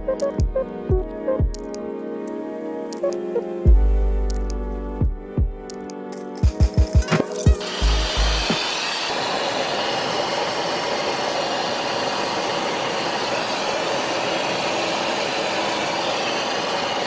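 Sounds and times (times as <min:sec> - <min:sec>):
jet cockpit airflow and engine noise: 0:06.7 - 0:17.0.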